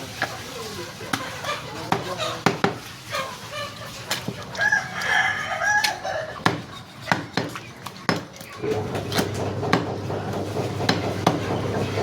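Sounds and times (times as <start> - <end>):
rooster crowing: 4.6 - 6.4
cleaver chopping on a block: 6.4 - 8.3.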